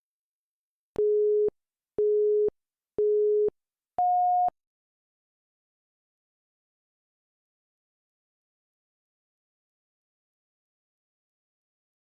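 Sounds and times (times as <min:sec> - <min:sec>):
timer beeps: 0:01.0 - 0:04.5
higher timer beep: 0:03.0 - 0:04.5.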